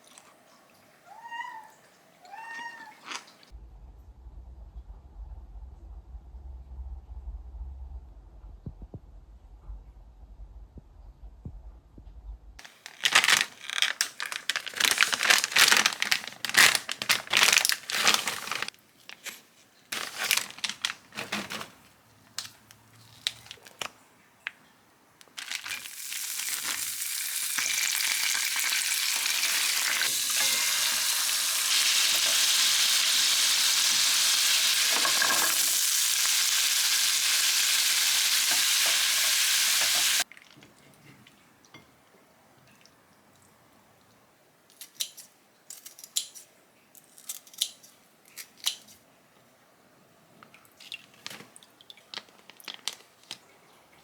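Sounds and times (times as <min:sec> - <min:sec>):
crackling and scraping while stirring: 0:12.6 - 0:24.0, 0:34.9 - 0:35.8
food sizzling in a pan: 0:25.6 - 0:40.2.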